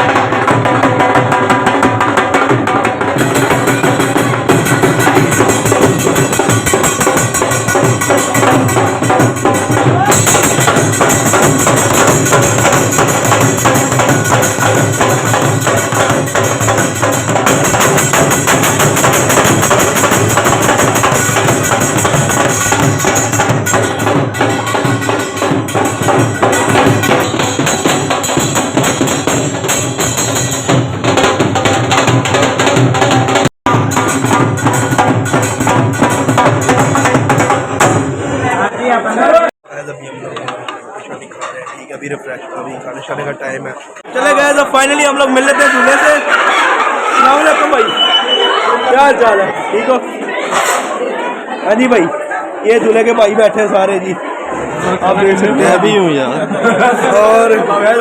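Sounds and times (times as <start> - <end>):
loud music with fast beat: 0.0 - 38.1.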